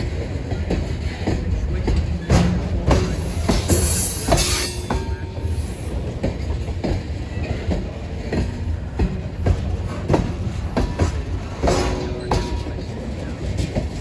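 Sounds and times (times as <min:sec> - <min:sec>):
low train rumble: 0:00.0 - 0:14.0
train wheels clicking over rail joints: 0:00.0 - 0:14.0
high wheel squeal: 0:03.1 - 0:05.9.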